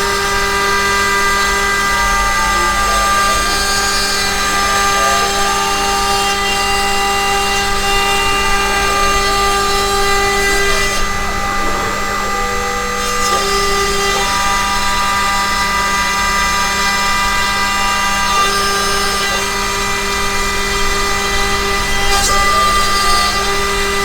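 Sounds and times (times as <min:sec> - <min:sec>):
end mill cutting plywood: 0:00.0 - 0:24.0
router spindle whining: 0:00.0 - 0:24.0
axis motor tones: 0:07.4 - 0:14.6.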